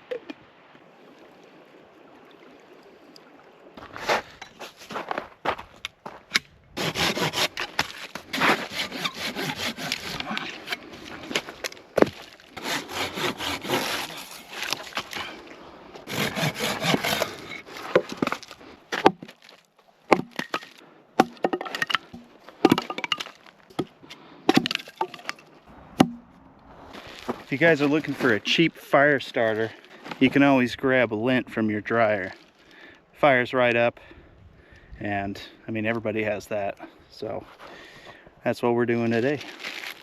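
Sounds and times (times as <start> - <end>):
hand saw cutting wood: 6.8 - 11.2, 12.0 - 15.3, 16.0 - 19.1
wood knocking and snapping: 17.9 - 25.4.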